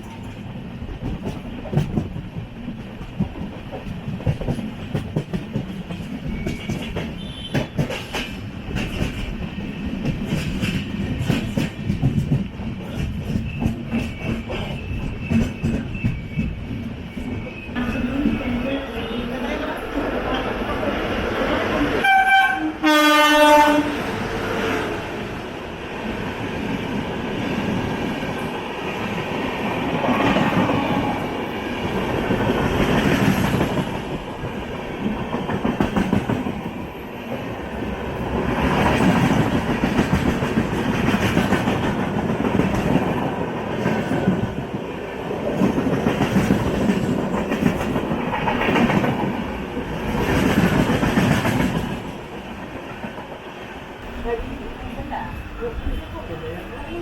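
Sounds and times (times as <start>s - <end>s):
train clickety-clack on rails: 0.0s - 57.0s
train horn: 7.2s - 7.9s, 22.0s - 24.1s.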